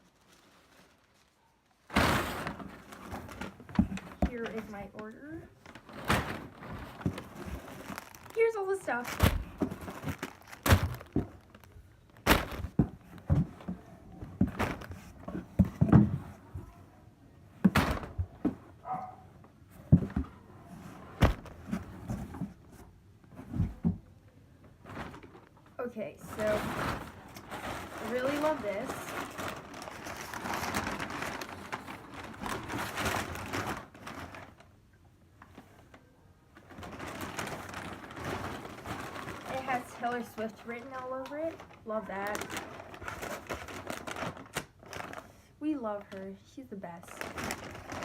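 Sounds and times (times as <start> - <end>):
packaging rustling and crinkling: 0.0 - 16.8, 19.8 - 24.0, 24.6 - 48.0
package knocks and rustles: 5.7 - 16.3, 21.2 - 22.6.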